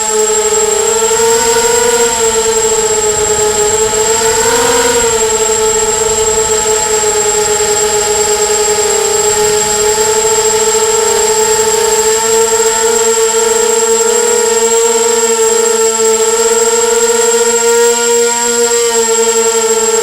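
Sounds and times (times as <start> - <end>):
drone motors and propellers whining: 0.0 - 15.1.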